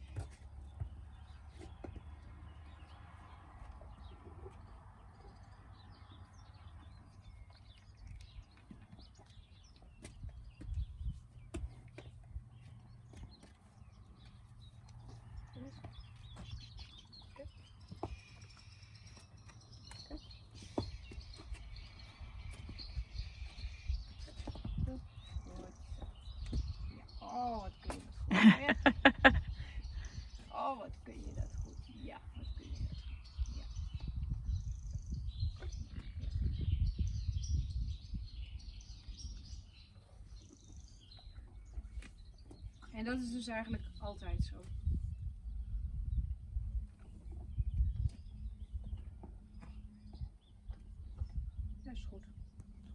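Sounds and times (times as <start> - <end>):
small birds chirping: 0.0 - 52.9.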